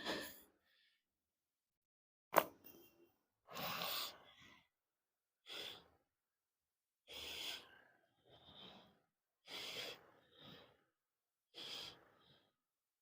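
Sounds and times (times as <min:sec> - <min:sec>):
person breathing: 0:05.4 - 0:06.0, 0:07.0 - 0:12.7.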